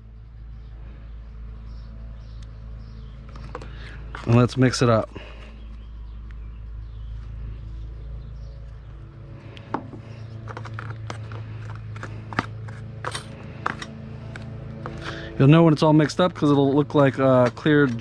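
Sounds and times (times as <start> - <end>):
steady low hum: 0.0 - 18.0
stir stick scraping container: 10.1 - 15.2.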